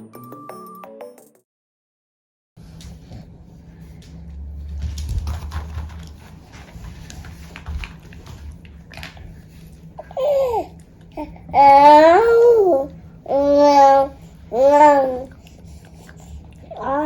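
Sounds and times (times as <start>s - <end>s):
rustling and light knocks: 2.6s - 9.9s
low rumble: 2.6s - 10.1s
baby vocalizing: 10.0s - 17.0s.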